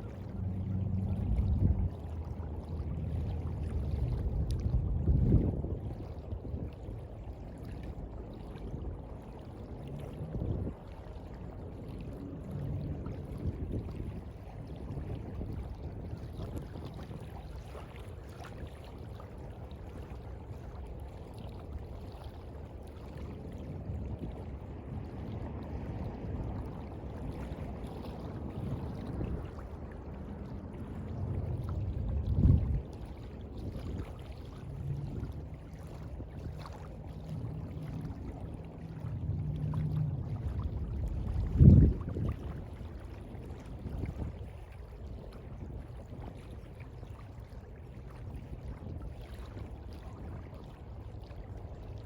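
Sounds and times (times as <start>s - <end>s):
sea water lapping: 0.0s - 52.0s
low rumble: 23.2s - 46.6s.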